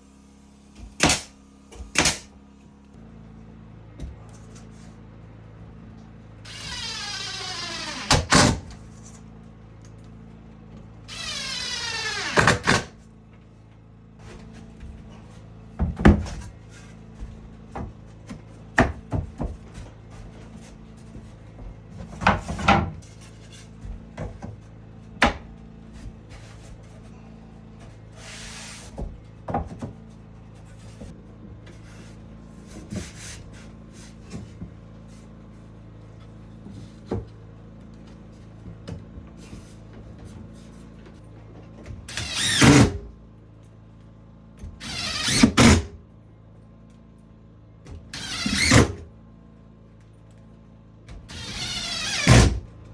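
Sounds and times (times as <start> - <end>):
wood and tools clattering: 6.0 - 35.4.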